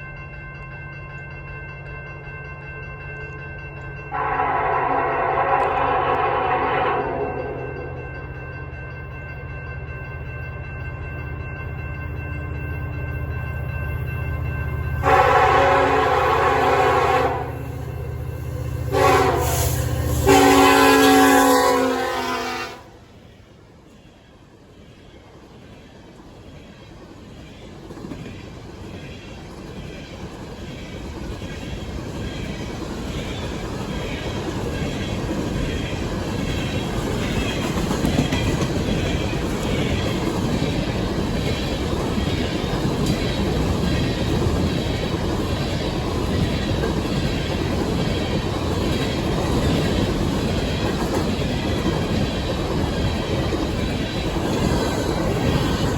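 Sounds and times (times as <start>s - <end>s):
train cars rolling past: 0.0s - 55.9s
locomotive air horn: 4.1s - 7.5s, 15.0s - 17.7s, 18.9s - 23.0s.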